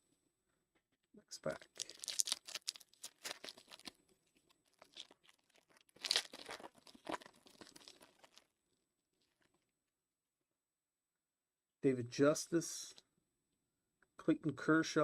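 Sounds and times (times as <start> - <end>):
wrapper tearing and crinkling: 1.5 - 8.4.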